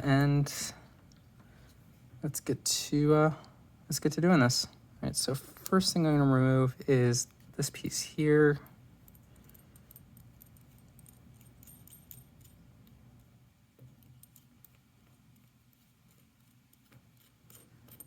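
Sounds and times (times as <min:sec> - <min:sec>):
small lock parts clicking: 0:09.1 - 0:15.5.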